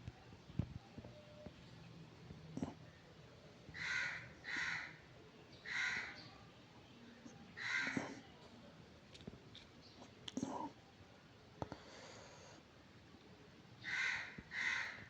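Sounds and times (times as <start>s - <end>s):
crow cawing: 3.8s - 5.0s, 5.7s - 6.2s, 7.6s - 8.0s, 13.8s - 15.0s.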